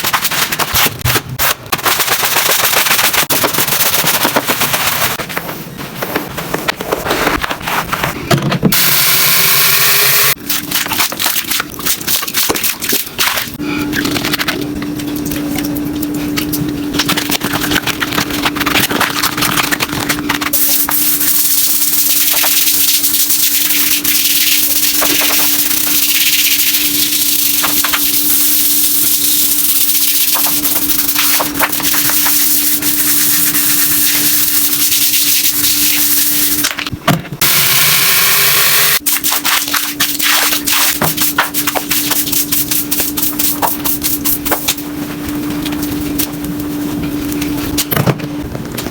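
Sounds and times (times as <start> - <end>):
constant hum: 10.3 - 21.4, 39.0 - 48.9.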